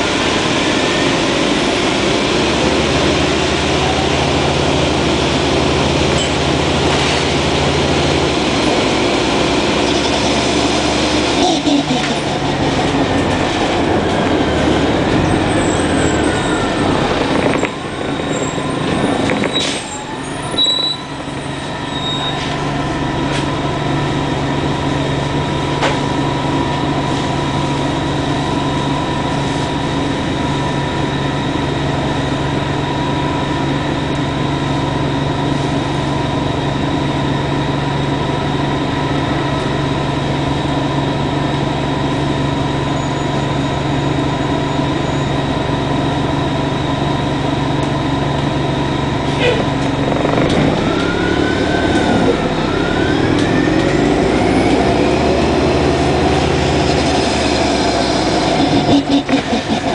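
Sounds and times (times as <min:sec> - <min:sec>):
bus engine idling: 0:00.0 - 0:59.9
bus engine whine: 0:00.0 - 0:59.9.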